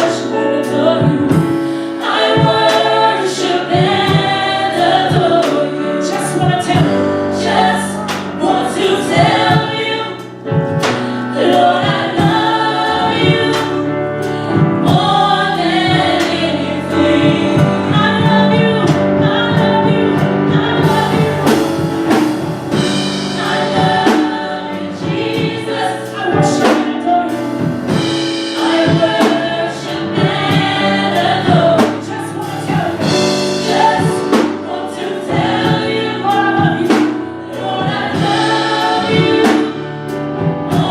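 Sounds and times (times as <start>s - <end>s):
gospel choir singing: 0.0s - 40.9s
instrumental accompaniment: 0.0s - 40.9s
drum beat: 11.5s - 13.9s, 14.6s - 25.8s.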